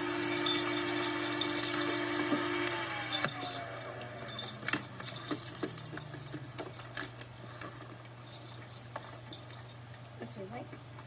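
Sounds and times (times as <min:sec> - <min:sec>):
steady low hum: 0:00.0 - 0:11.0
puppy claws clicking and scrabbling: 0:04.2 - 0:11.0.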